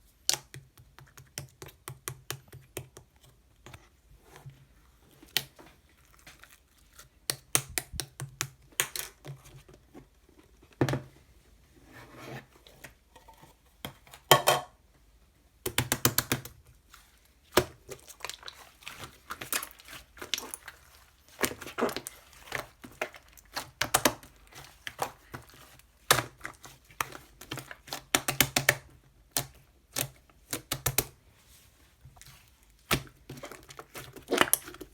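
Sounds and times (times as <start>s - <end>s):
slime squishing with sticky pops: 5.2s - 9.4s, 15.6s - 31.2s, 32.0s - 34.9s.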